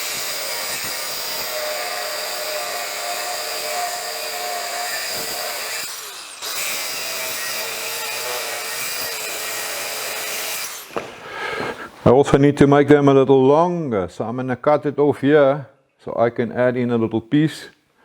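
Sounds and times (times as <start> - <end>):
power tool cutting steel: 0.0 - 11.0.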